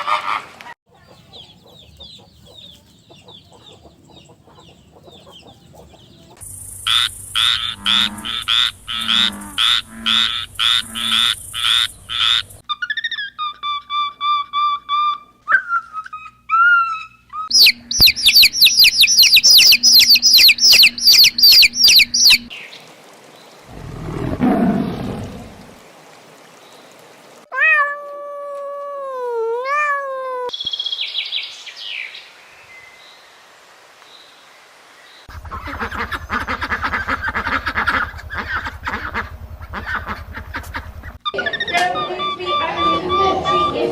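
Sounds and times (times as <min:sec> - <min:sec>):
bird-like chirping: 0:00.9 - 0:13.5, 0:16.1 - 0:22.5
low rough animal sound: 0:23.7 - 0:25.8
long wavering meow: 0:27.5 - 0:30.5.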